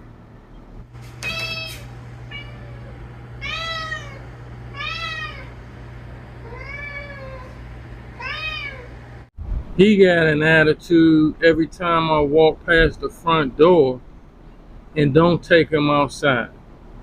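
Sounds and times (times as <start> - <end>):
steady low hum: 0.0 - 17.0
cat meowing: 1.1 - 5.6, 6.4 - 7.6, 8.2 - 8.9.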